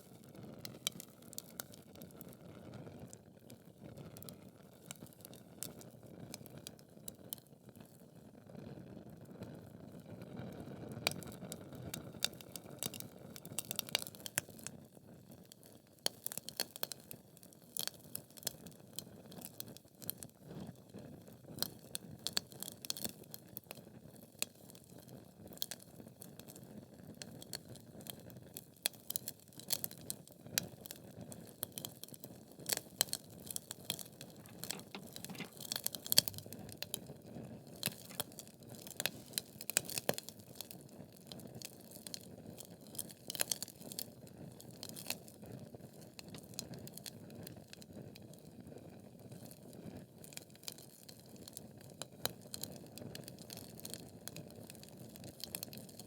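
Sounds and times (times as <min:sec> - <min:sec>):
fire popping and snapping: 0:34.4 - 0:37.0, 0:37.8 - 0:39.1.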